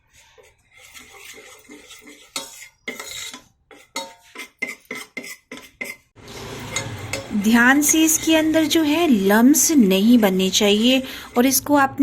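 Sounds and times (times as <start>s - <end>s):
spoon scraping a pan: 0.0s - 12.0s.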